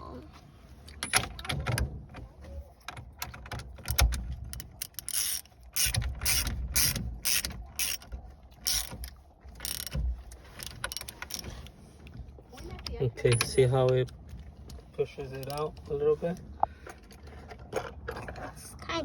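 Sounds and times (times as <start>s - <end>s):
sharp metal clicks and ratchet ticks: 3.3s - 10.0s.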